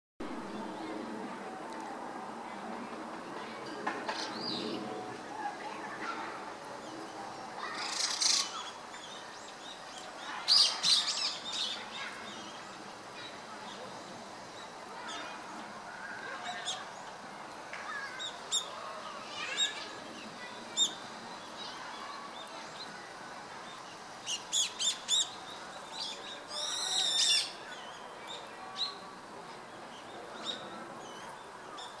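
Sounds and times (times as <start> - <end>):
birds chirping and calling: 7.6 - 12.5, 24.2 - 29.0.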